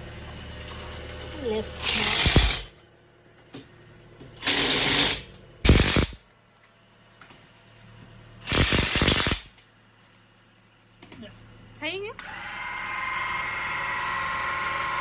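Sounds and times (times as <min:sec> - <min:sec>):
impact wrench hammering: 0:01.8 - 0:02.7, 0:04.4 - 0:06.2, 0:08.5 - 0:09.6.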